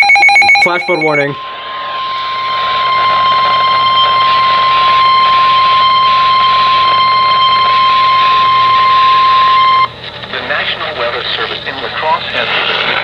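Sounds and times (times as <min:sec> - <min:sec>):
high steady warning alarm tone: 0:00.0 - 0:10.0
radio static: 0:10.0 - 0:13.0.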